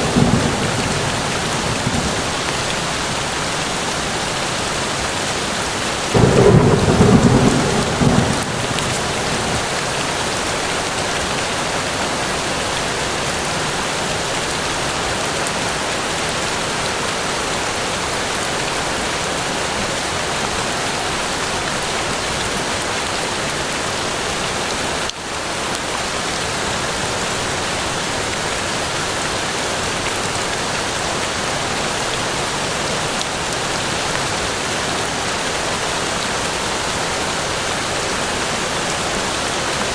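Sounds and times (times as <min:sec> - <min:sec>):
thunder rumble: 0:00.0 - 0:03.8, 0:06.1 - 0:10.2
heavy rain in forest: 0:00.0 - 0:39.9.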